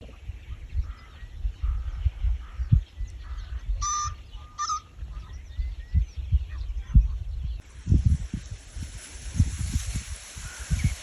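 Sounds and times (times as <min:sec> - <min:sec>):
bird calls: 0:00.0 - 0:07.6.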